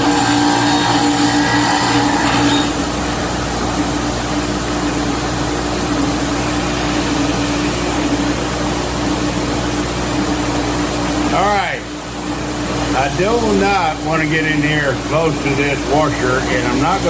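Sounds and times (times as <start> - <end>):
bench grinder grinding metal: 0.0 - 9.6, 15.6 - 17.0.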